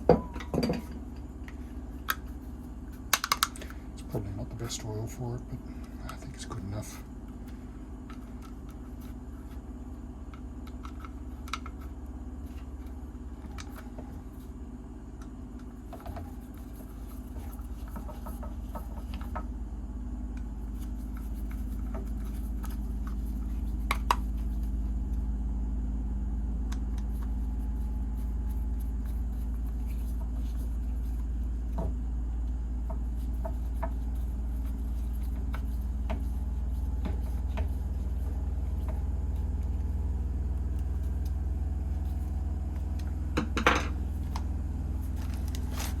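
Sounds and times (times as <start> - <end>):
low engine-like drone: 0.0 - 46.0.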